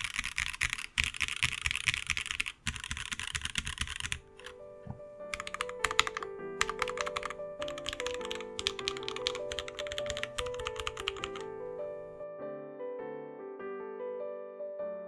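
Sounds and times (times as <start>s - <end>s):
mechanical keyboard typing: 0.0s - 11.6s
soft piano music: 0.0s - 15.0s.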